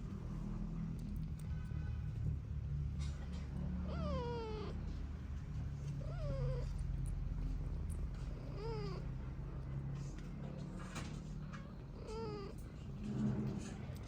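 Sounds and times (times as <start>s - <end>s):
cat meowing: 3.8s - 5.0s, 5.9s - 7.2s, 8.2s - 9.3s, 11.9s - 12.9s.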